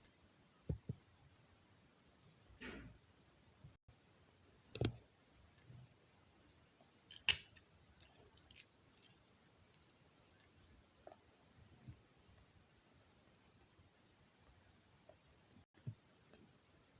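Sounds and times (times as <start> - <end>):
plastic bricks snapping together: 7.1 - 7.6.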